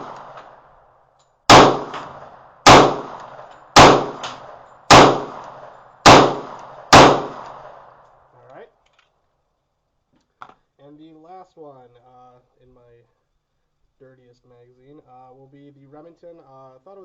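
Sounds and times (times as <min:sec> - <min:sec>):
pistol shots: 0:00.0 - 0:00.7, 0:01.5 - 0:08.0.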